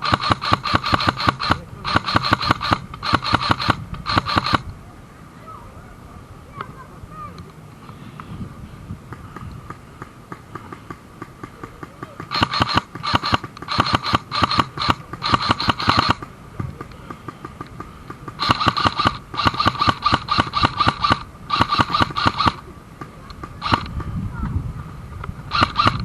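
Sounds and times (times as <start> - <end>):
airsoft rifle bursts: 0.0 - 4.6, 12.2 - 16.3, 16.9 - 24.0, 25.5 - 26.0.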